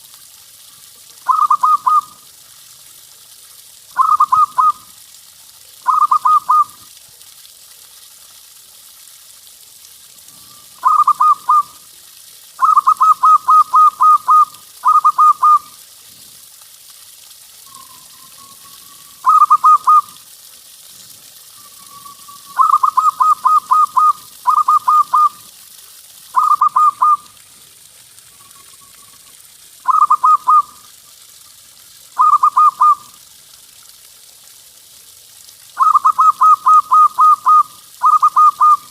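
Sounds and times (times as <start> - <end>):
dove staccato cooing: 1.2 - 2.1, 4.0 - 4.8, 10.8 - 11.7, 12.6 - 15.7, 19.2 - 20.1, 29.9 - 30.7
soft drawn-out dove coos: 1.2 - 2.2, 12.6 - 15.8, 29.9 - 30.8.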